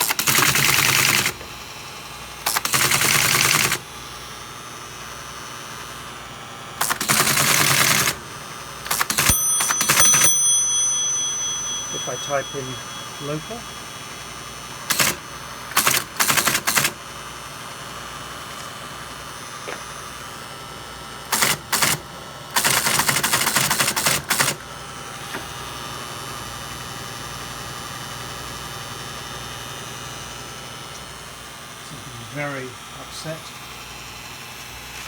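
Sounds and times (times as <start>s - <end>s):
teletype mechanical clattering: 0.0s - 1.4s, 2.4s - 3.8s, 6.8s - 8.2s, 8.8s - 10.3s, 14.8s - 17.0s, 21.3s - 24.6s.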